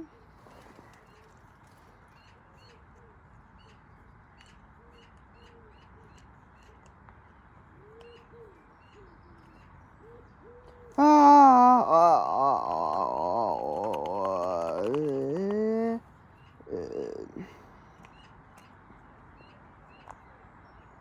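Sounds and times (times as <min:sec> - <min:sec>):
soft bird coos: 0:00.0 - 0:01.5, 0:07.6 - 0:18.2.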